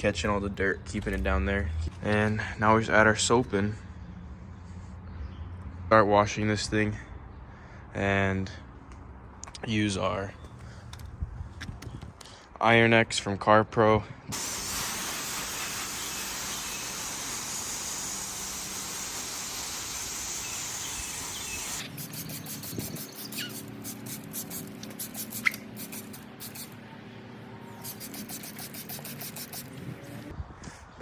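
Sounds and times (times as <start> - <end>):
short quick sprays: 14.3 - 26.8, 27.7 - 30.3
spray hissing onto car paint: 14.3 - 26.8, 27.8 - 30.1.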